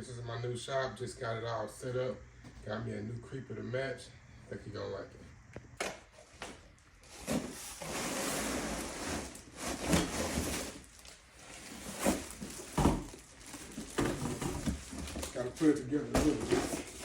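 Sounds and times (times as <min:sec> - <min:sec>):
plastic scraping and rustling: 0:06.1 - 0:17.0.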